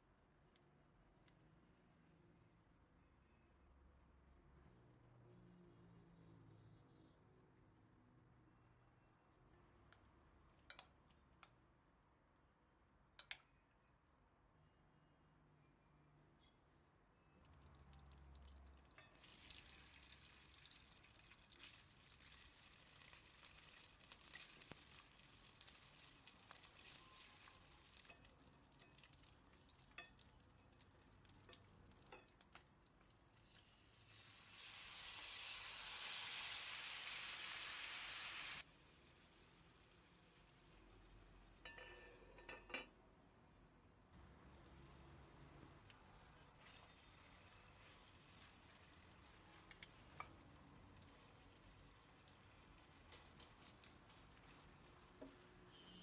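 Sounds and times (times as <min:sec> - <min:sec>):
food sizzling in a frying pan: 0:18.9 - 0:40.4, 0:46.5 - 0:55.4.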